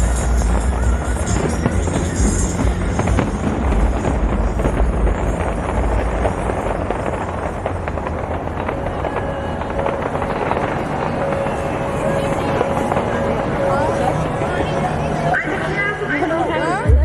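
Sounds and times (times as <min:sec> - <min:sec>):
deep fireworks booms: 0:00.0 - 0:15.1
fireworks bursting and crackling: 0:00.0 - 0:16.2
display music: 0:08.8 - 0:17.0.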